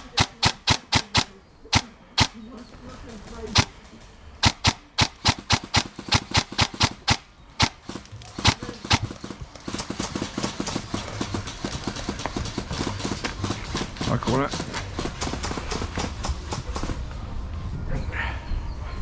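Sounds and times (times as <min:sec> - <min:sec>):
airsoft gun shots: 0:00.0 - 0:02.4, 0:04.4 - 0:16.2.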